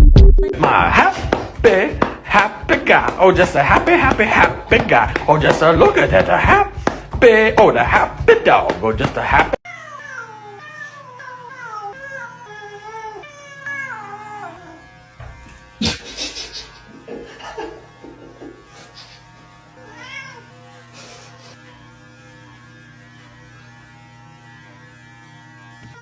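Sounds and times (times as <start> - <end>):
pet crying: 9.6 - 14.9, 19.8 - 20.6.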